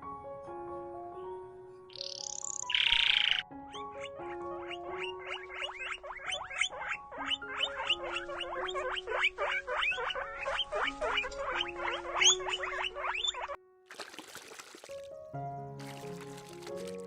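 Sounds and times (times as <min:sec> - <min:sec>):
background music with held notes: 0:00.0 - 0:17.0.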